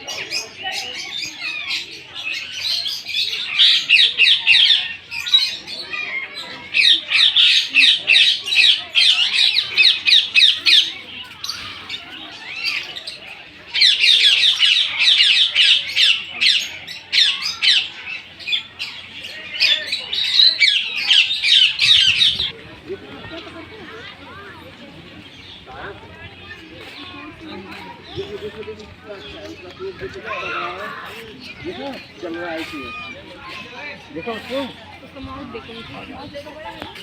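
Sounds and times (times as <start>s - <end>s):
flock of birds squawking: 0.0s - 22.5s.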